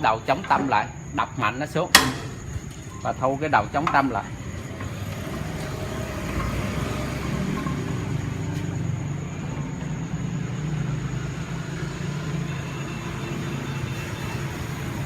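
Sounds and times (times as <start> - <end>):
low mechanical hum: 0.0 - 11.7.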